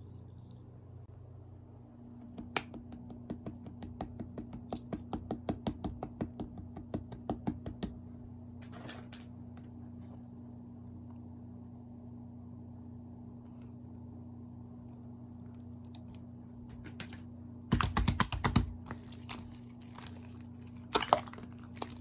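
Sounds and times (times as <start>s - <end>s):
low electrical hum: 0.0s - 22.0s
slime clicking by hand: 2.2s - 8.0s, 17.7s - 19.0s.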